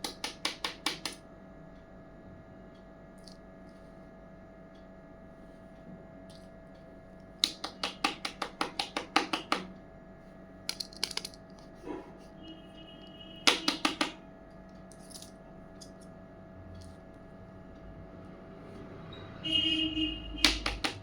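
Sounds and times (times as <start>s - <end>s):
plastic toy pieces clicking: 10.7s - 11.4s.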